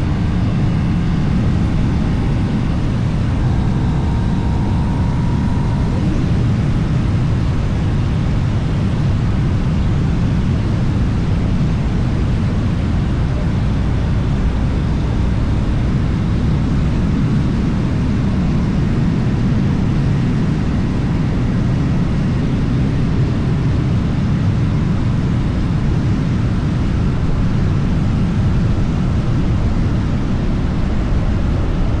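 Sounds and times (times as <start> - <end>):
engine humming: 0.0 - 7.6, 14.5 - 32.0
wind rumble: 0.0 - 8.4.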